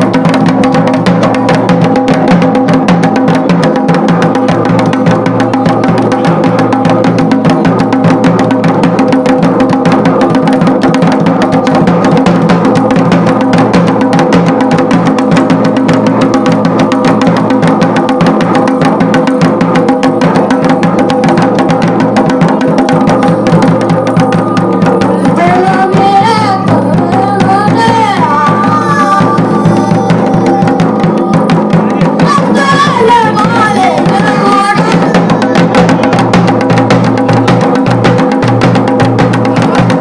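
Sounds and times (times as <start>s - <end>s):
fast dhol drumming: 0.0s - 40.0s
wavering melody: 22.6s - 36.7s.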